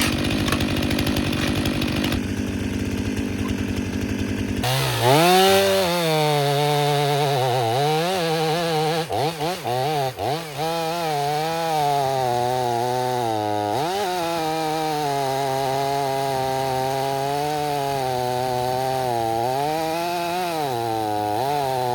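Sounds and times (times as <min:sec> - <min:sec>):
chainsaw running at high revs: 0:00.0 - 0:21.9.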